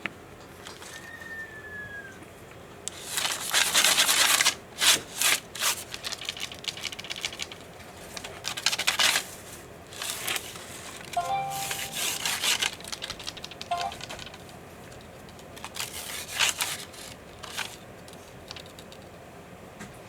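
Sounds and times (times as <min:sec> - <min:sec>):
scratching and rustling: 0:11.8 - 0:19.1.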